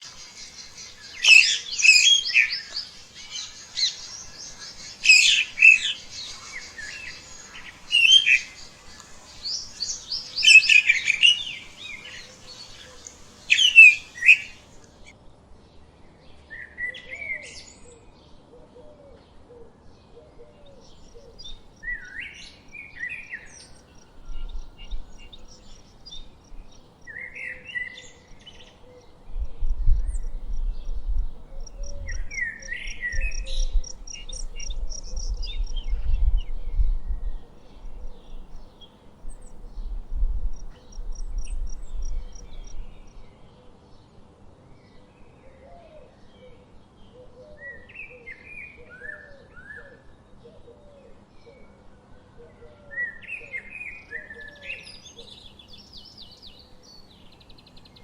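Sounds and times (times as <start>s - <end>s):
wild birds chirping: 0.0s - 15.1s, 20.0s - 43.4s, 52.9s - 58.0s.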